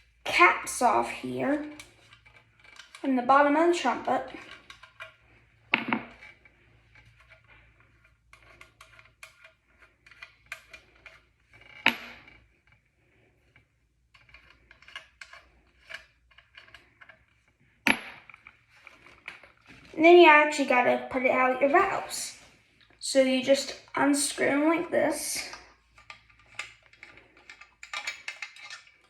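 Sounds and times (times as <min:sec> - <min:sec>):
trumpet valve caps clicking: 0:25.9 - 0:29.0.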